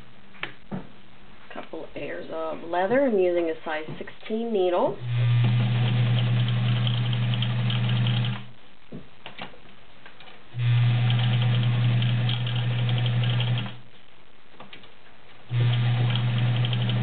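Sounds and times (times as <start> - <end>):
sewing machine motor hum: 5.0 - 8.5, 10.6 - 13.8, 15.5 - 17.0.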